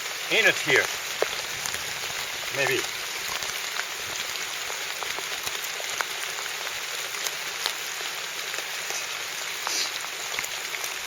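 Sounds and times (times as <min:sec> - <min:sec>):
rain falling: 0:00.0 - 0:11.0.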